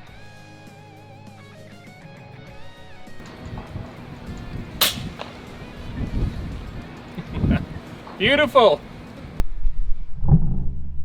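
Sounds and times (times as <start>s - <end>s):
sharp click: 4.8s - 5.3s
thud: 4.8s - 5.4s.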